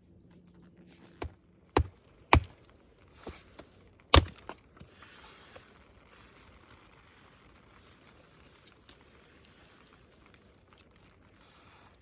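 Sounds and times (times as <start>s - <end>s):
axe chopping firewood: 1.1s - 2.6s, 3.2s - 4.9s.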